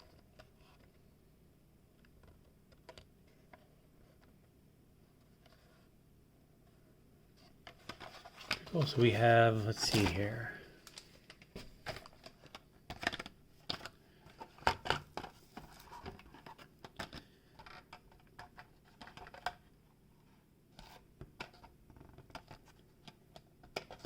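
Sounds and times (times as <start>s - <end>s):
plastic packs clicking and tapping: 9.9s - 19.6s, 21.2s - 24.0s.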